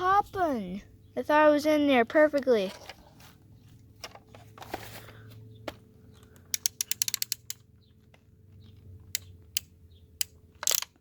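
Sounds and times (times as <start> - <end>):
plastic toy blaster clicks: 6.6 - 7.6, 9.2 - 11.0.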